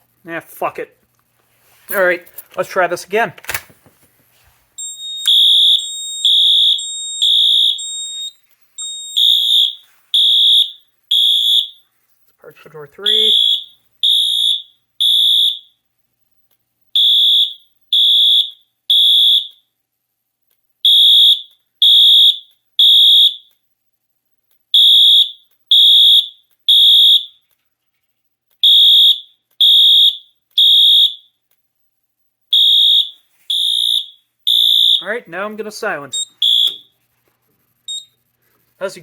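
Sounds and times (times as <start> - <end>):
fire alarm high-pitched beeps: 4.8 - 11.9, 13.1 - 15.8, 16.9 - 19.7, 20.8 - 23.6, 24.7 - 27.5, 28.6 - 31.4, 32.5 - 35.3, 35.9 - 37.0, 37.9 - 38.2.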